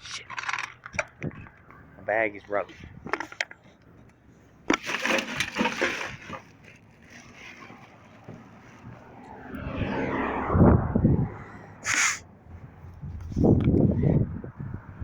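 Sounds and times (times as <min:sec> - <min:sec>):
bag rustling: 0:04.8 - 0:08.2.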